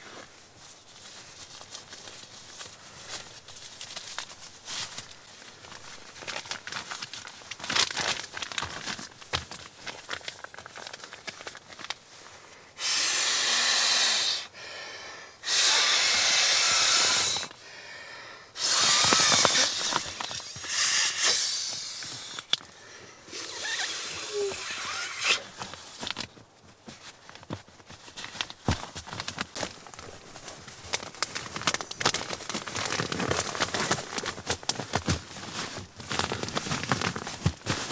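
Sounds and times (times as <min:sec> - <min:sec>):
handling rustles and clicks: 0:00.0 - 0:12.4, 0:25.3 - 0:37.9
rushes of air from pump: 0:12.8 - 0:17.6, 0:18.6 - 0:22.5, 0:23.3 - 0:25.5.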